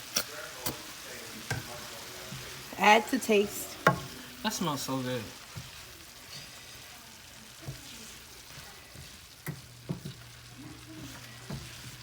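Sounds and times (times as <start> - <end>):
cabbage sizzling in a frying pan: 0.0 - 12.0
utensil knocking against pan: 3.8 - 4.1.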